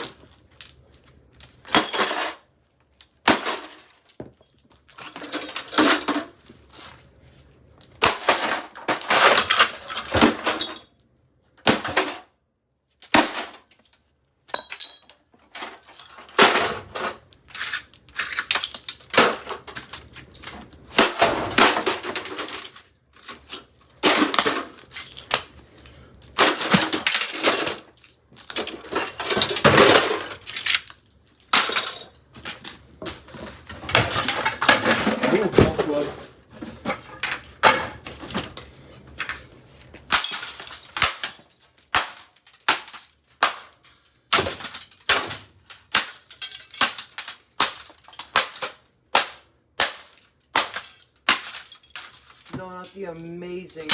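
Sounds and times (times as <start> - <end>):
microwave being smashed: 1.6 - 2.4, 3.2 - 4.1, 8.0 - 10.8, 11.6 - 12.3, 13.0 - 13.7, 15.5 - 25.5, 26.4 - 32.6, 33.7 - 36.1, 40.1 - 52.8.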